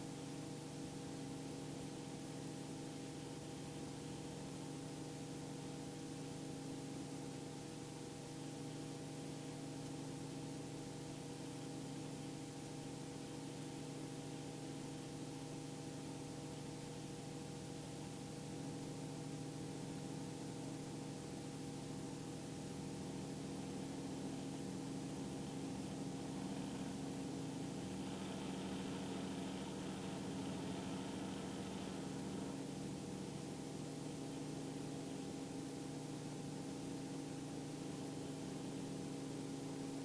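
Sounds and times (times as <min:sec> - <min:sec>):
helicopter drone: 0:25.0 - 0:33.2.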